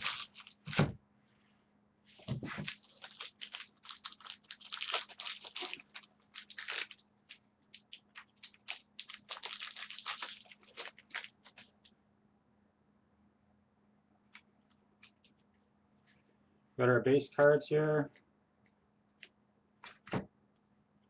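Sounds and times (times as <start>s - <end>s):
card pack wrapper crinkling and tearing: 0.0s - 0.9s, 2.2s - 11.9s.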